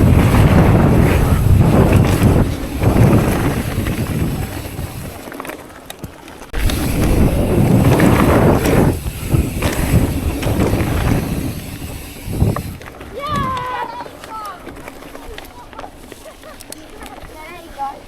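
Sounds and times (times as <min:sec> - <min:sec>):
wind buffeting microphone: 0:00.0 - 0:05.3, 0:06.5 - 0:13.8
bike tyre rumble on trail: 0:00.0 - 0:18.0.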